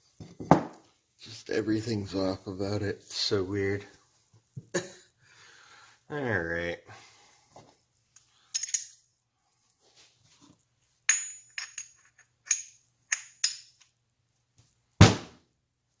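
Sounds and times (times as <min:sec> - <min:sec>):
metal parts clinking: 0:08.5 - 0:09.0, 0:11.1 - 0:13.8
heavy metal knock: 0:15.0 - 0:15.4.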